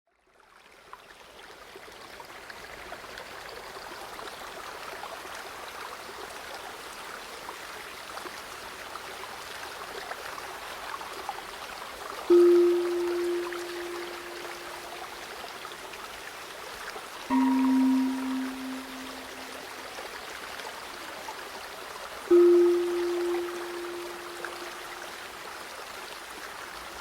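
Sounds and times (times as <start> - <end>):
gong ringing: 12.3 - 14.8, 17.3 - 19.5, 22.3 - 25.1
river water babbling: 12.3 - 15.1, 17.3 - 19.8, 22.2 - 25.5.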